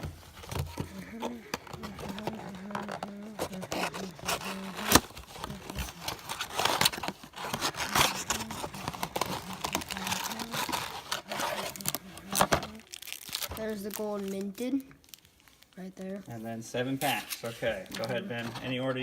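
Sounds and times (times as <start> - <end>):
packaging crinkling and tearing: 0.0 - 18.9.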